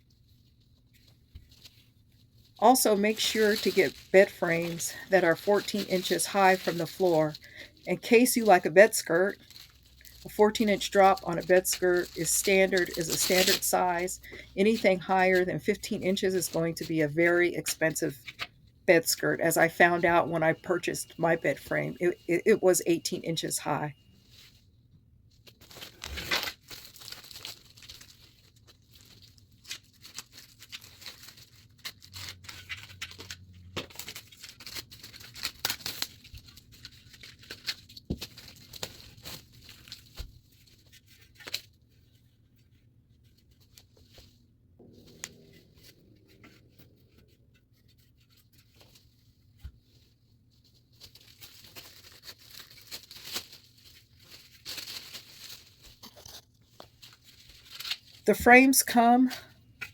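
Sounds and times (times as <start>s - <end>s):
packaging tearing and crinkling: 9.3s - 13.7s, 25.5s - 41.8s, 50.9s - 58.2s.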